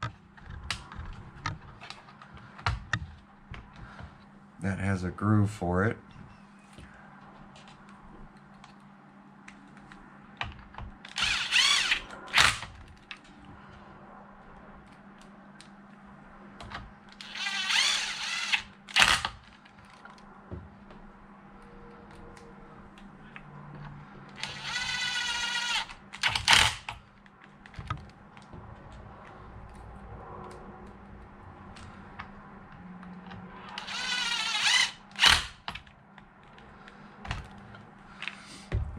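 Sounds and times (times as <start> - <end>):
handheld power tool running: 11.1 - 12.6, 17.2 - 19.3, 24.4 - 26.9, 33.7 - 35.7.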